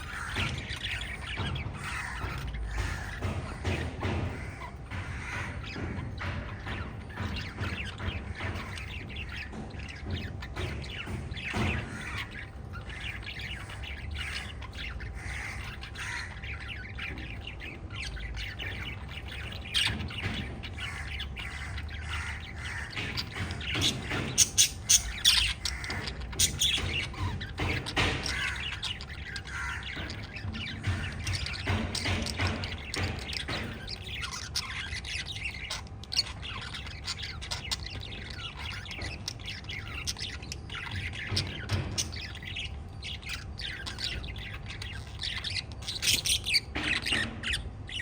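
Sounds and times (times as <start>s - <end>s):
birds chirping and squawking: 0.0s - 48.0s.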